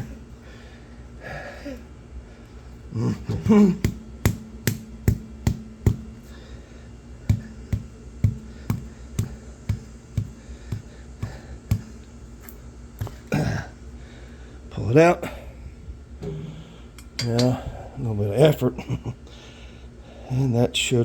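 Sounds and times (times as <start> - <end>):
faint steady hum: 0.0 - 21.0
sharp taps: 3.4 - 6.3, 7.3 - 12.1.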